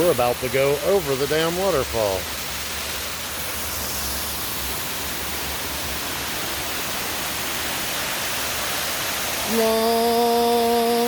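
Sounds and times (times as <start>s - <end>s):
waterfall rushing: 0.0s - 11.0s
person singing a drawn-out note: 9.4s - 11.0s.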